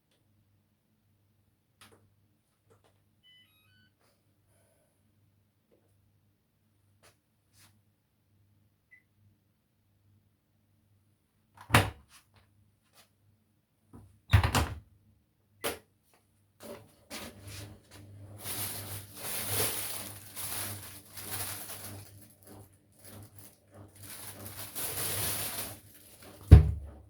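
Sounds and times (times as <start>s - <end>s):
washing machine thunks: 24.4s - 27.0s.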